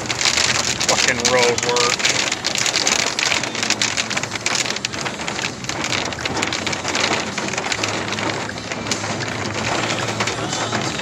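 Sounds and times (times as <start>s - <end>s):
rain and hail on a vehicle roof: 0.0s - 11.0s.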